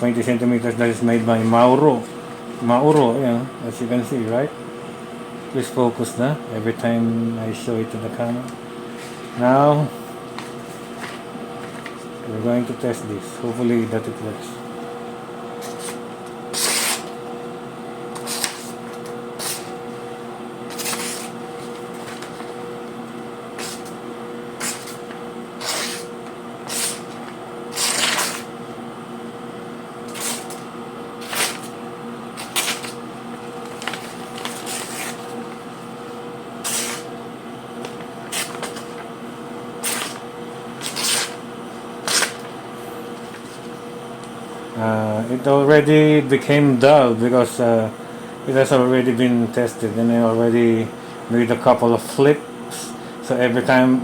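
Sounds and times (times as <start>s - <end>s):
steady background hum: 0.0s - 54.0s
knife blade rasping strokes: 15.6s - 17.1s, 20.7s - 21.4s, 25.6s - 27.1s, 27.7s - 28.5s, 40.8s - 41.4s.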